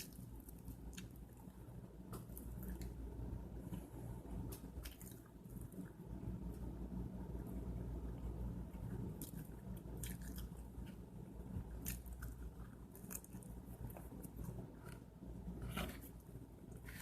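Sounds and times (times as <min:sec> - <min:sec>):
person chewing food: 0:00.0 - 0:03.0, 0:04.5 - 0:05.9, 0:08.7 - 0:17.0
low steady hum: 0:00.0 - 0:17.0
food crunches: 0:11.8 - 0:15.0.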